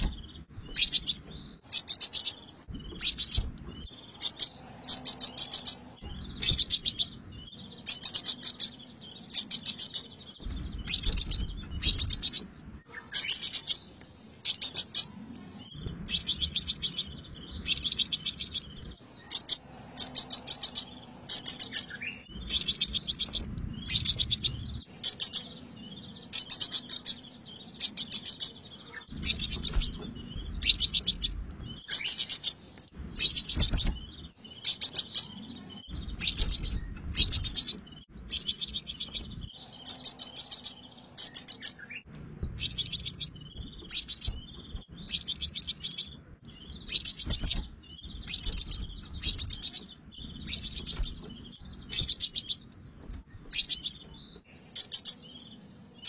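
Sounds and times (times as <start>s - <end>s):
bird trilling song: 0.0s - 56.0s.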